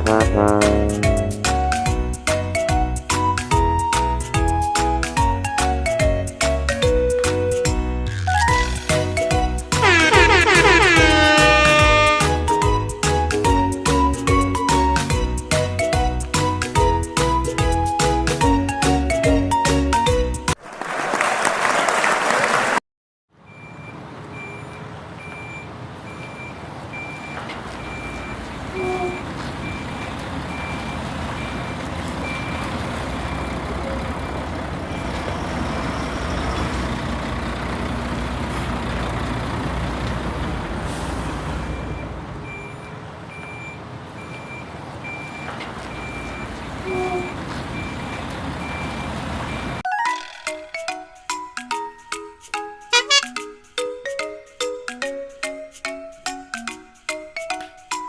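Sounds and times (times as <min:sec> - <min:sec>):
truck engine: 0:00.0 - 0:20.5, 0:23.4 - 0:49.8
reversing alarm beeping: 0:23.5 - 0:35.9, 0:41.7 - 0:49.8.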